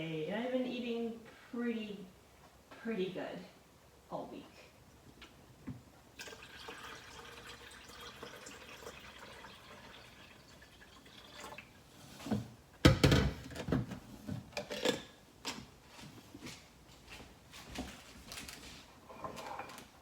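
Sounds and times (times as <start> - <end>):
water running: 6.2 - 11.9.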